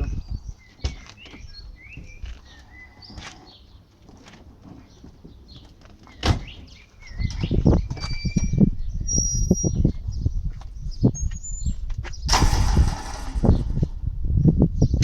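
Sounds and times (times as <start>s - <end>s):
small birds chirping: 0.0s - 12.4s, 13.1s - 15.0s
loud thump: 12.3s - 14.1s.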